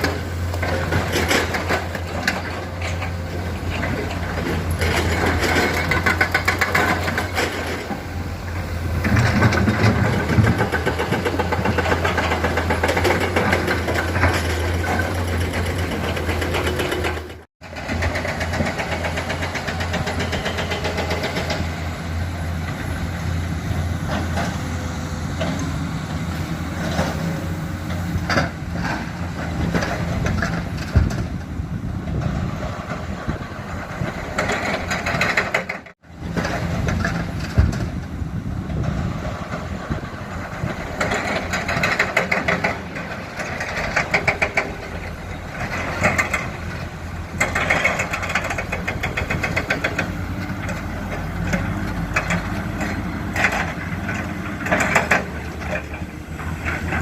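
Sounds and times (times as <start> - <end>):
diesel excavator engine running: 0.0 - 57.0
rock rattling and clattering: 0.6 - 8.0.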